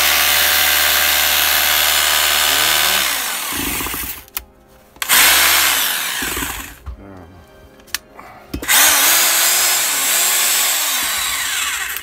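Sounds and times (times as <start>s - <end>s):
rotary hammer motor spinning: 0.0s - 4.3s, 5.0s - 6.8s, 8.6s - 12.0s.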